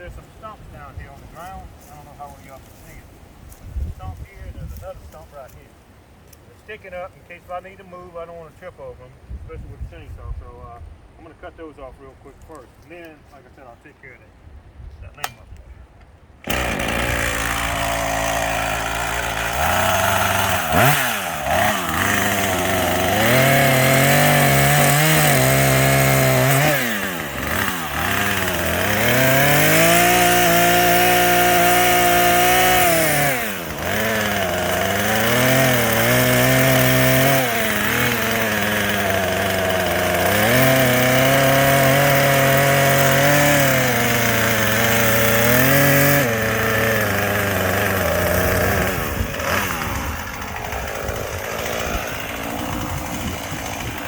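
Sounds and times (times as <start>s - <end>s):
chainsaw engine revving: 16.4s - 54.0s.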